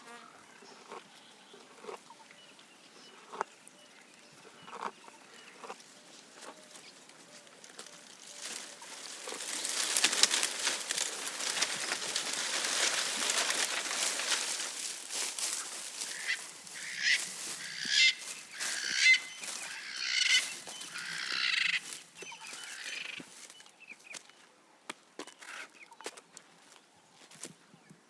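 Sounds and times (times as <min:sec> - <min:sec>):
giraffe chewing leafy branches: 0:04.6 - 0:23.0.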